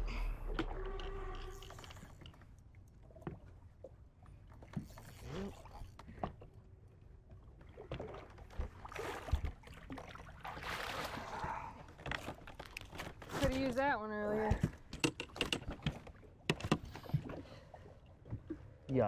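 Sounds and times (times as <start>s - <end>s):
low rumble of wind and water: 0.0s - 19.0s
knocks and clicks of handling: 14.7s - 16.9s.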